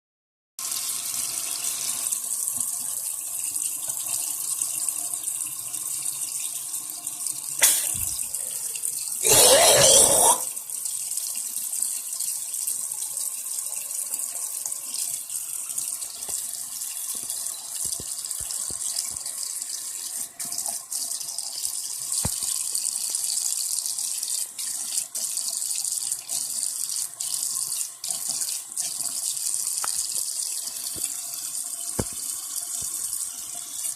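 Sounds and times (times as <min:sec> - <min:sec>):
tap water running into sink: 0:00.6 - 0:33.9.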